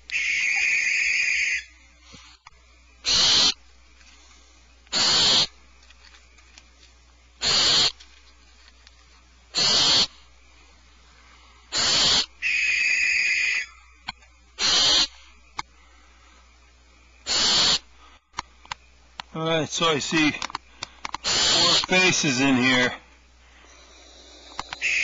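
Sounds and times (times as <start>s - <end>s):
owl nestlings hissing: 0.0s - 8.1s, 9.4s - 13.8s, 14.5s - 18.3s, 19.3s - 25.0s
owl screech: 0.1s - 1.8s, 3.0s - 3.6s, 4.9s - 5.5s, 7.4s - 8.0s, 9.5s - 10.2s, 11.7s - 13.8s, 14.6s - 15.2s, 17.3s - 17.9s, 21.2s - 21.9s, 23.7s - 25.0s.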